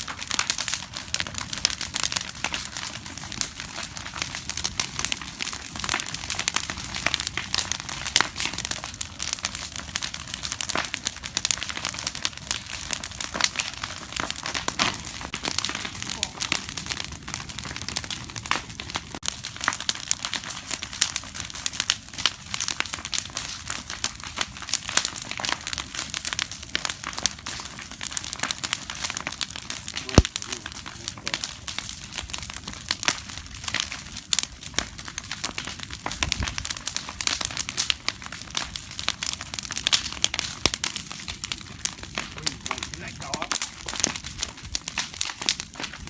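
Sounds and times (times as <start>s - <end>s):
bonfire crackling and popping: 0.0s - 46.0s.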